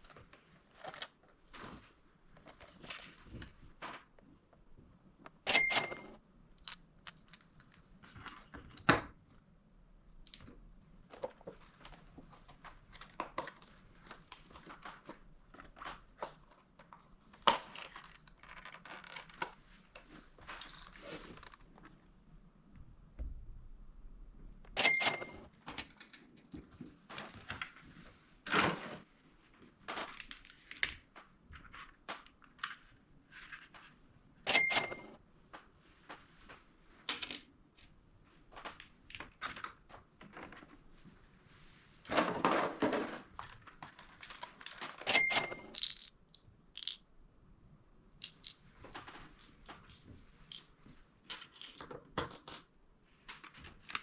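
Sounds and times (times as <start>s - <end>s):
ringing dings: 5.5s - 6.2s, 24.8s - 25.5s, 34.5s - 35.2s, 45.1s - 45.7s.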